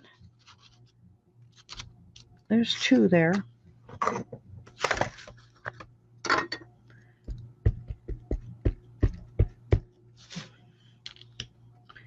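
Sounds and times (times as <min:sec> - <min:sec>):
rustling of craft pieces: 0:00.3 - 0:01.9.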